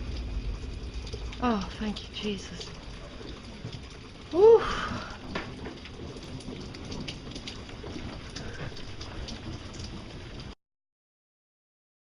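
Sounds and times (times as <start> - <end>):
outdoor hiss: 0.0 - 5.8
low rumble: 0.0 - 10.5.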